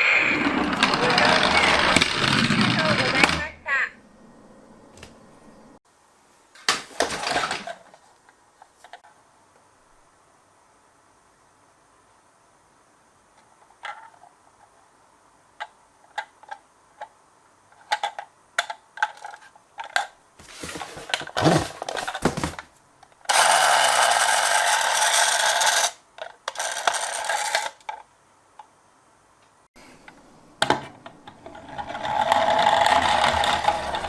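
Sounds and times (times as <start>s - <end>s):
toy car rattling along track: 0.4s - 3.5s, 23.3s - 28.0s, 31.2s - 34.0s.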